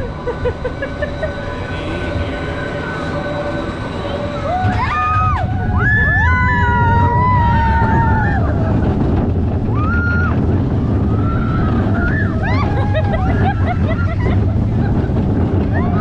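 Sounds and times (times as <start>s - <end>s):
roller coaster train rumbling: 0.0s - 16.0s
wind rushing over microphone: 1.1s - 16.0s
riders screaming: 4.1s - 8.7s, 9.7s - 14.3s.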